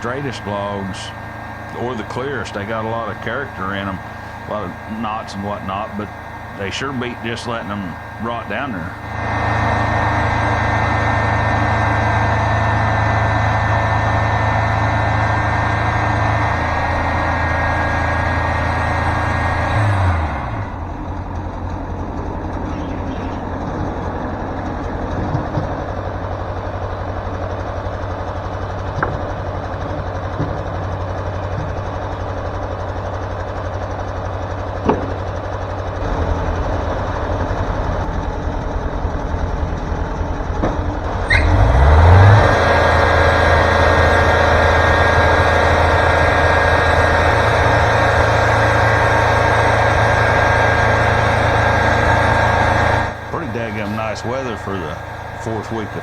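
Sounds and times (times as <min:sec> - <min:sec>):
sawmill engine running: 0:00.0 - 0:56.0
sharp knocks: 0:34.8 - 0:35.4.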